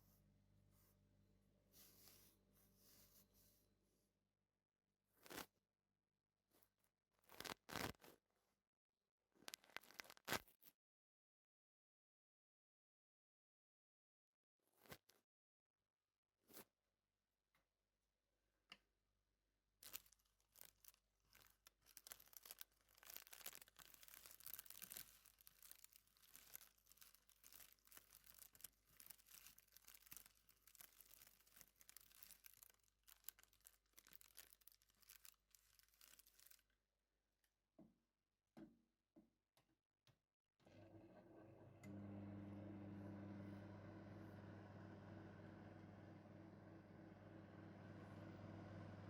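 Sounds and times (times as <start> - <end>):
faint dry rustling and crackling: 6.6 - 8.2, 9.4 - 10.7, 19.8 - 36.8.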